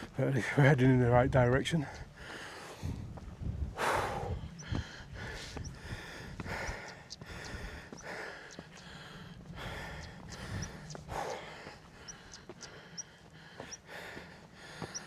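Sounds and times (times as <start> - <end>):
person breathing heavily: 1.9 - 3.1, 3.7 - 15.0
footsteps: 4.7 - 15.0.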